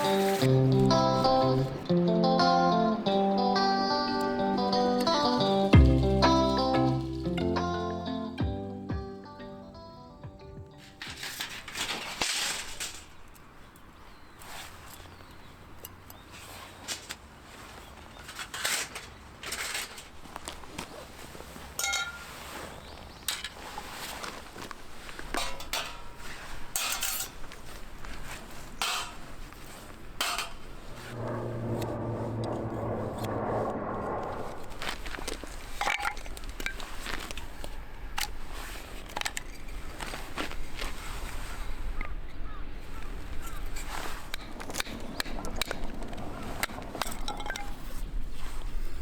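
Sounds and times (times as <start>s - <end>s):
metal cookware clinking: 21.8s - 22.2s, 26.7s - 27.4s
low hum: 30.9s - 35.8s.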